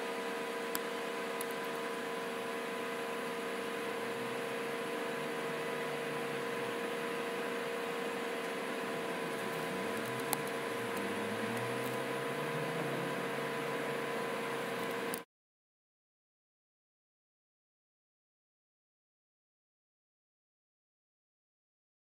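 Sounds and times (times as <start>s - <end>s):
electrical hum and hiss: 0.0s - 15.2s.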